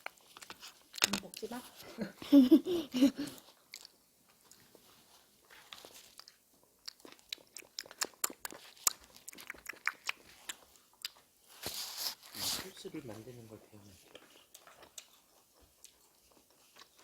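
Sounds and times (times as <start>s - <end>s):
person chewing food: 0.0s - 17.0s.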